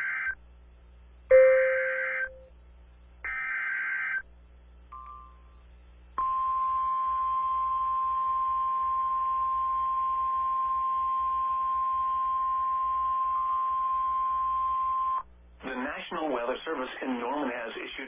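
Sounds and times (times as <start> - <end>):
steady warning alarm tone: 1.3 - 2.5.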